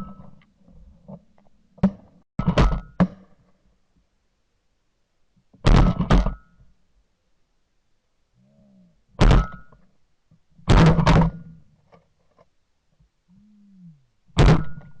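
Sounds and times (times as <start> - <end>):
shotgun blasts: 9.2 - 9.7, 14.4 - 15.0.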